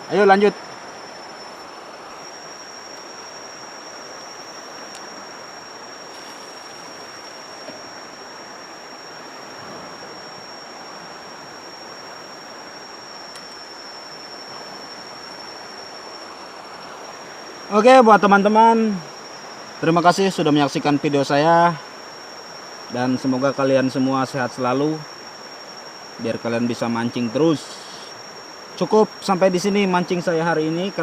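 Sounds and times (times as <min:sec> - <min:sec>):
river water flowing: 0:00.0 - 0:18.2.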